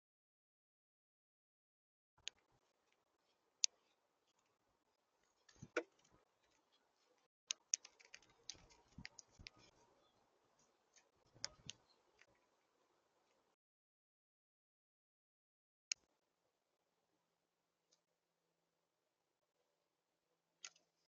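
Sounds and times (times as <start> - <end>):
birds pecking at feeder: 5.4 - 12.4.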